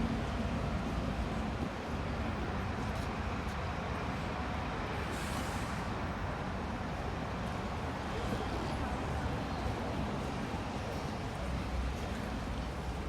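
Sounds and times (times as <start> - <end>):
brief hiss: 5.1 - 5.9.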